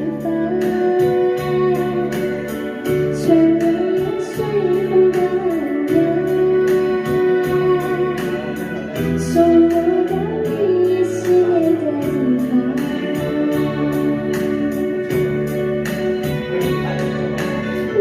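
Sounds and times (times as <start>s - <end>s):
organ-like chords: 0.0s - 18.0s
sliding melody: 0.0s - 18.0s
steady beat: 11.6s - 18.0s.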